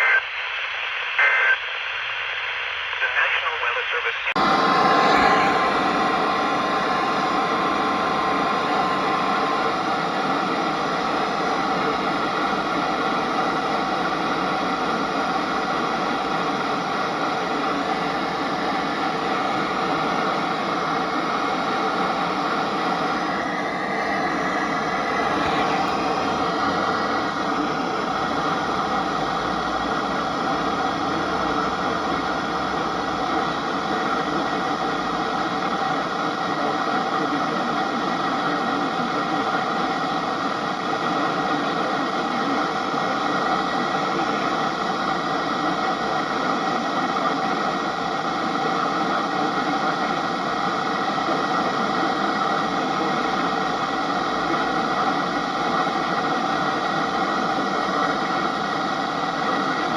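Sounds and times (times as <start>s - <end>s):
radio static hiss: 0.0s - 59.9s
faint hum tones: 4.4s - 36.7s.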